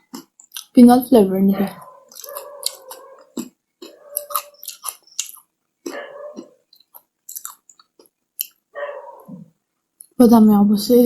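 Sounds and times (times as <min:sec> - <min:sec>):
person chewing chocolate bar: 0:00.0 - 0:00.8, 0:02.0 - 0:08.7.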